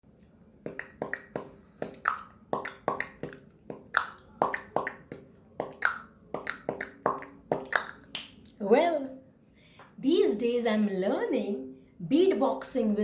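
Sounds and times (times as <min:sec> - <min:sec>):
beatboxing: 0:00.7 - 0:08.3.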